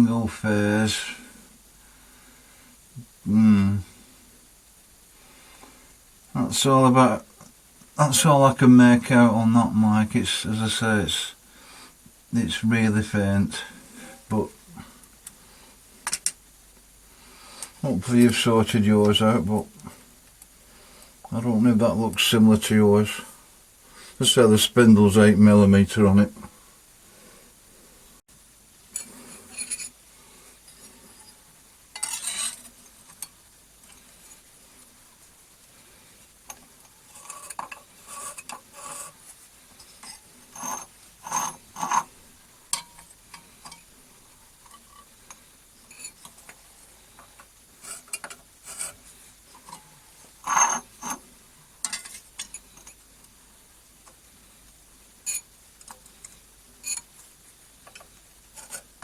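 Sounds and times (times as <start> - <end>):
small metal objects clinking: 49.6 - 51.2.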